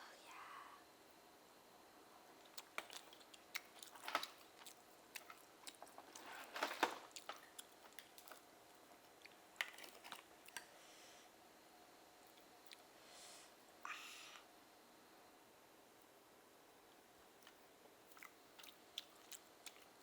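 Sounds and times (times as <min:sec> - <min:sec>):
wet chewing and lip smacks: 0:02.4 - 0:06.3, 0:07.1 - 0:09.8, 0:12.2 - 0:12.8, 0:17.4 - 0:20.0.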